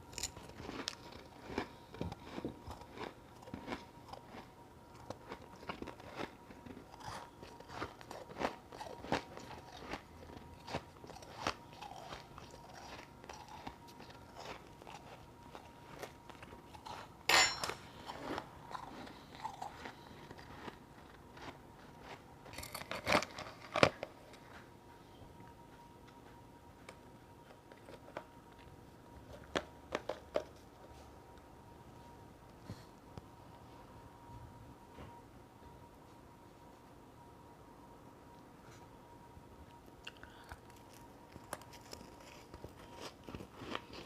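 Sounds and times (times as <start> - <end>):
crunching and chewing ice: 0.0 - 24.7, 26.8 - 30.7, 40.0 - 44.0.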